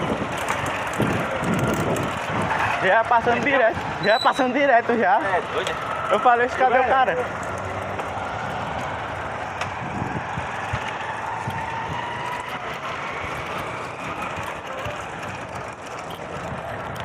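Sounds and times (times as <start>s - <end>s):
road and traffic noise: 0.0s - 17.0s
vehicle passing with faint whine: 4.6s - 17.0s.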